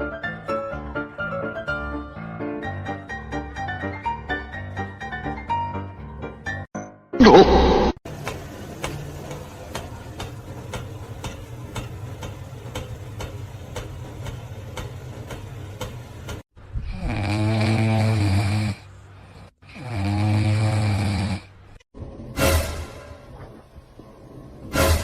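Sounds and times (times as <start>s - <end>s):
animal snoring loudly: 16.8s - 21.8s.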